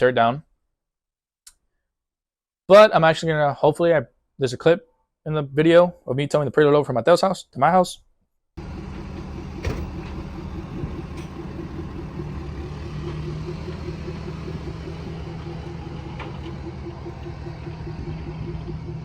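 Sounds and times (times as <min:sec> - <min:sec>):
vehicle driving on road: 0:08.6 - 0:19.0.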